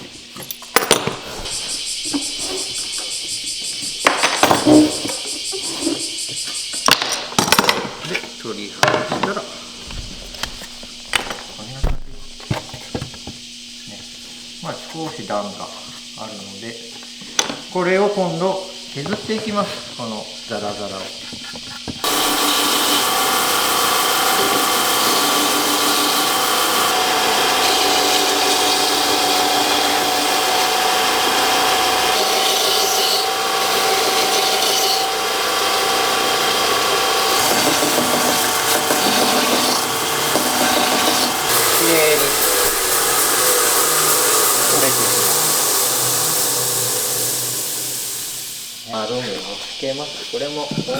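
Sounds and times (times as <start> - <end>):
power tool cutting hardwood: 0.8 - 9.4, 22.0 - 49.5.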